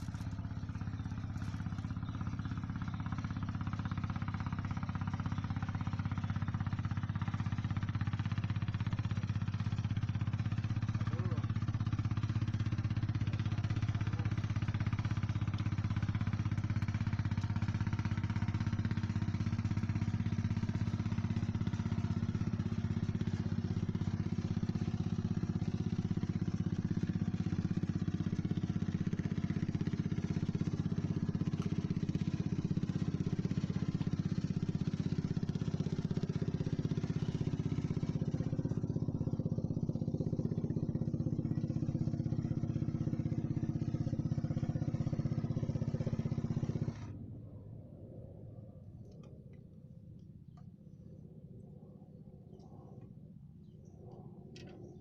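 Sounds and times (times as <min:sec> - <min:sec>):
small engine humming: 0:00.0 - 0:47.7.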